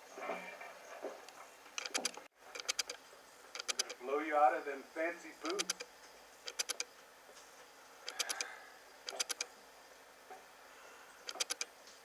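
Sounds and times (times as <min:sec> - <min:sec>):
sharp metallic clicks: 0:01.8 - 0:04.0, 0:05.4 - 0:06.9, 0:08.0 - 0:09.5, 0:11.2 - 0:11.7.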